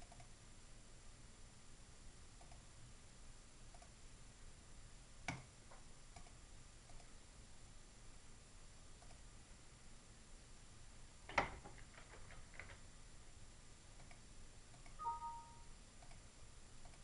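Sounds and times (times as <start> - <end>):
faint light ticks: 0.0 - 0.4, 2.4 - 2.7, 3.7 - 4.0, 5.3 - 7.1, 14.0 - 15.0, 16.0 - 17.0.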